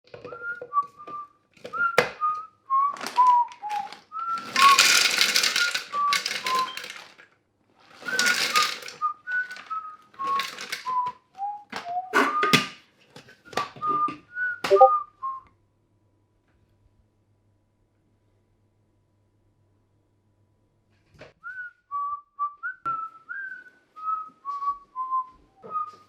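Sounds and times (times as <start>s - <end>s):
person whistling a slow tune: 0.2s - 5.0s, 5.6s - 6.8s, 8.1s - 12.6s, 13.5s - 15.5s, 21.4s - 26.0s
clicking and clattering: 4.4s - 7.2s, 8.0s - 10.9s.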